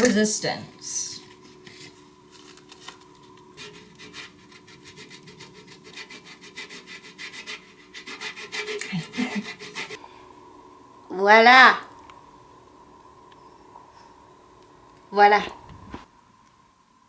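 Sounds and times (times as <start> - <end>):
rhythmic rasping scrapes of grater: 3.6 - 10.0.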